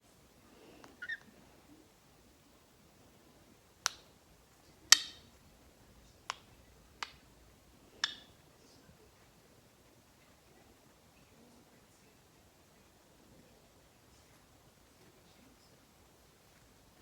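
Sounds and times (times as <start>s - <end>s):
parrot tongue clicks: 8.0s - 8.3s.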